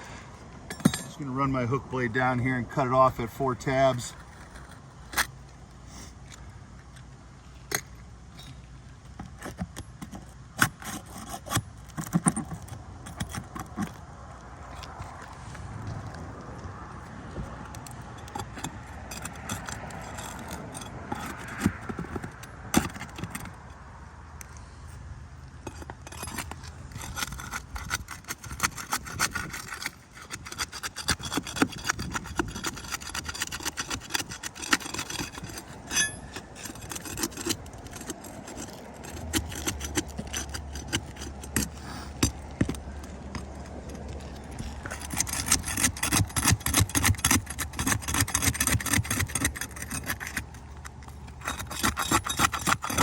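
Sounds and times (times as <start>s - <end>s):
hand tools scraping shingles: 9.2s - 14.1s, 17.9s - 23.6s, 25.7s - 53.0s.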